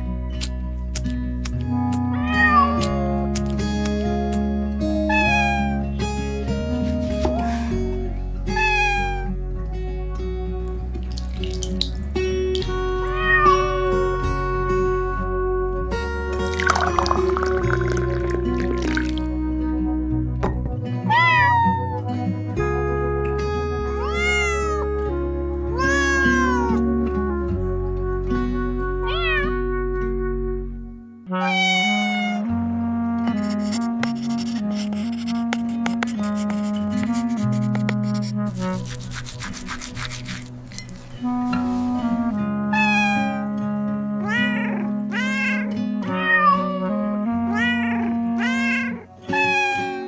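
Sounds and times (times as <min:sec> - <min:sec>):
instrumental background music: 0:00.0 - 0:50.0
cat meowing: 0:02.2 - 0:03.0, 0:05.1 - 0:05.9, 0:08.5 - 0:09.4, 0:13.0 - 0:14.2, 0:21.0 - 0:22.0, 0:24.0 - 0:24.9, 0:25.7 - 0:26.8, 0:29.0 - 0:29.6, 0:31.3 - 0:32.6, 0:42.7 - 0:43.5, 0:44.2 - 0:50.0.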